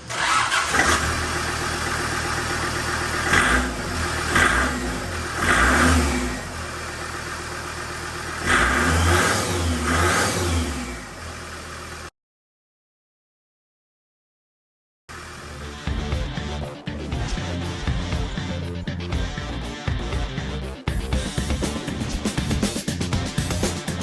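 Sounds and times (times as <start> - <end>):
diesel engine revving: 0.0 - 12.1, 15.1 - 18.8.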